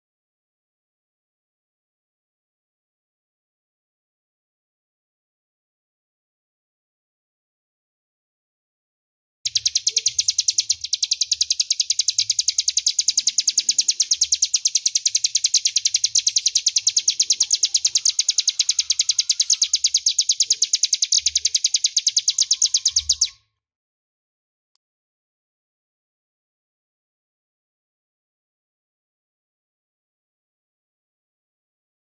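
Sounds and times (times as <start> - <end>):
bird trilling high notes: 9.5 - 23.4.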